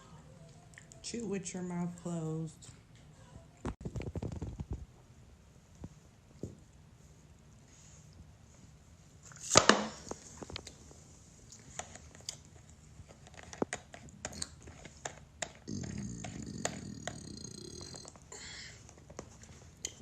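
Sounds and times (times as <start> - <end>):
wet mouth clicks: 15.4 - 18.2
person burping: 15.7 - 18.2.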